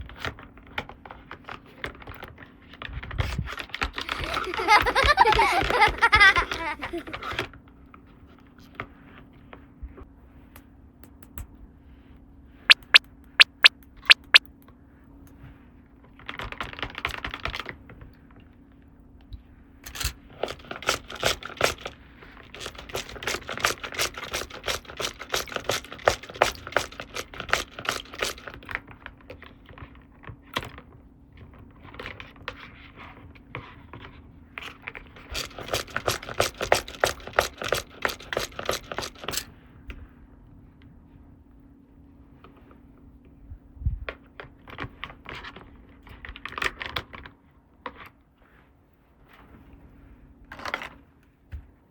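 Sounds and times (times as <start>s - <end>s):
short scratchy burst: 12.7s - 14.4s
plastic toy pieces clicking: 35.3s - 39.4s.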